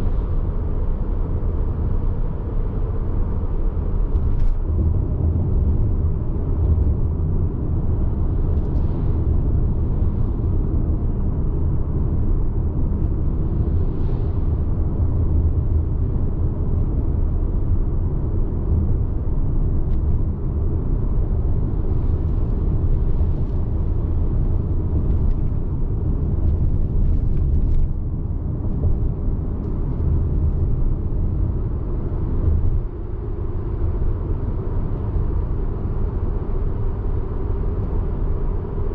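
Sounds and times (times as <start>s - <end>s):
car interior low rumble: 0.0s - 38.9s.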